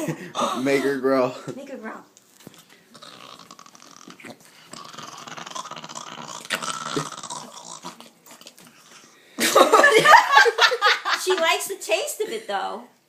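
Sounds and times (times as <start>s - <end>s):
dog growling: 2.9s - 9.2s.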